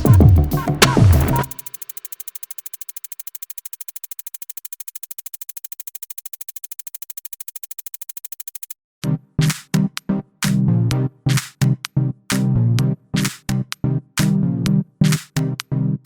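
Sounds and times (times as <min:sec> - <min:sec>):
chopped synth chords: 0:00.0 - 0:01.7, 0:09.0 - 0:15.8
pulsing synthesizer pattern: 0:00.0 - 0:04.3.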